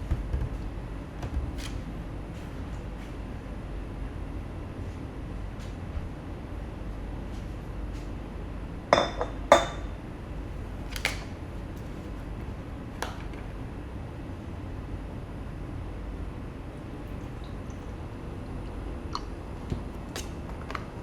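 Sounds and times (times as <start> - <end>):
low steady hum: 0.0 - 21.0
dishes clinking: 9.0 - 9.9.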